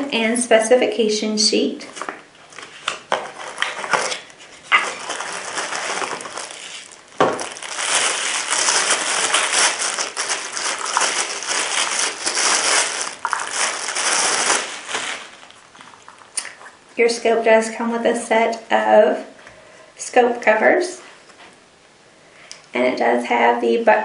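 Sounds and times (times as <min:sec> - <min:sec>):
packaging crinkling: 0:01.9 - 0:16.7.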